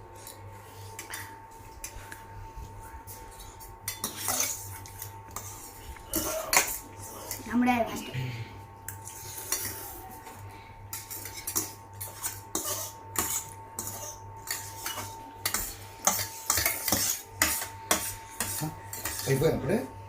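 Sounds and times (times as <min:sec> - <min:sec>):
spoons clinking against dishes: 0:03.4 - 0:07.4, 0:10.9 - 0:19.6.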